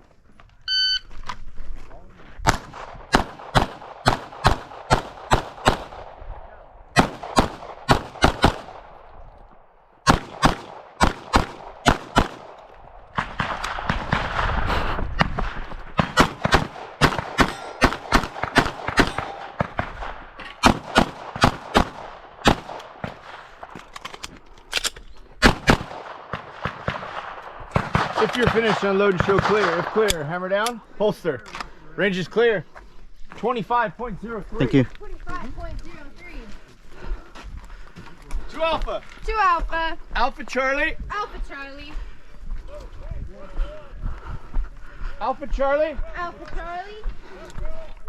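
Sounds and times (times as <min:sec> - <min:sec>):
pistol shots: 0:02.4 - 0:09.2, 0:10.0 - 0:23.4, 0:25.4 - 0:30.2.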